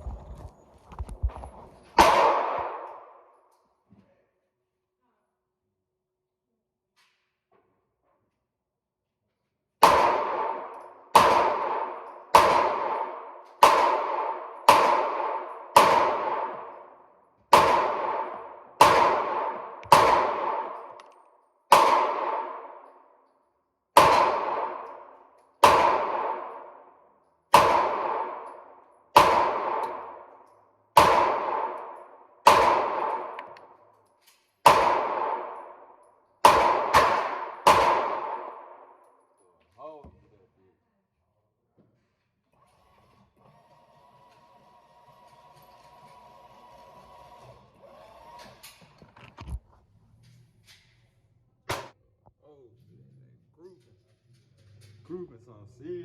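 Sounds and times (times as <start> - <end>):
handgun shots: 2.0 - 3.1, 9.8 - 16.9, 17.5 - 23.0, 24.0 - 26.8, 27.5 - 33.8, 34.6 - 39.0, 51.7 - 52.0.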